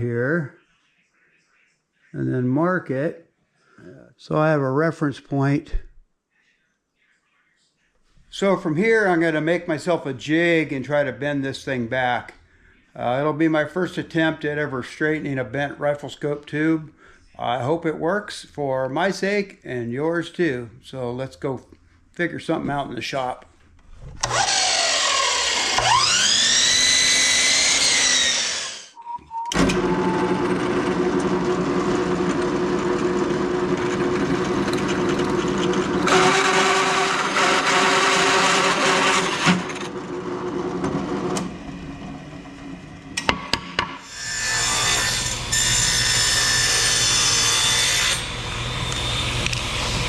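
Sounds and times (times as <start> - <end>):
power tool motor spinning: 24.2 - 28.9, 29.5 - 42.4
power tool cutting or drilling: 24.2 - 41.7, 44.0 - 50.0.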